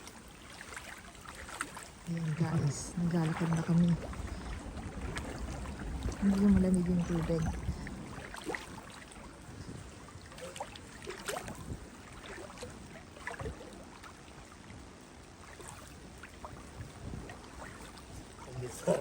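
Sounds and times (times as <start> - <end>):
feet wading through water: 0.0 - 19.0
flowing creek: 0.0 - 19.0.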